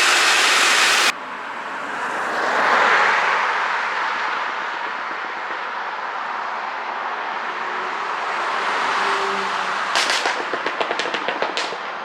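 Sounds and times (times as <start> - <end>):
car exhaust running: 0.0 - 1.1
sharp exhaust pops and crackles: 0.0 - 1.1, 9.9 - 12.0.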